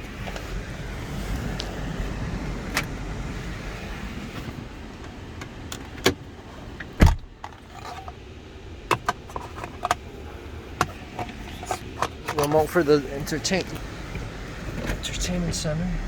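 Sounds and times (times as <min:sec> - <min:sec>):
low vehicle rumble: 0:00.0 - 0:16.0
clicks and knocks of handling: 0:08.9 - 0:10.0, 0:10.8 - 0:12.7.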